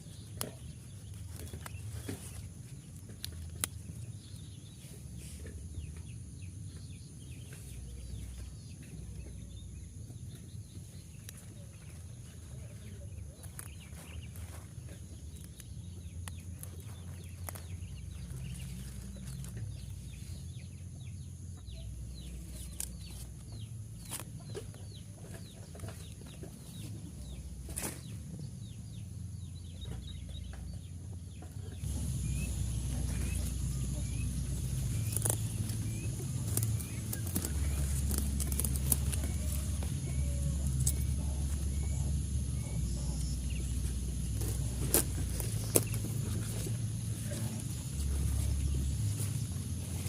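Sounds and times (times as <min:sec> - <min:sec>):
birds chirping: 0:00.0 - 0:50.0
low rumble: 0:31.8 - 0:50.0.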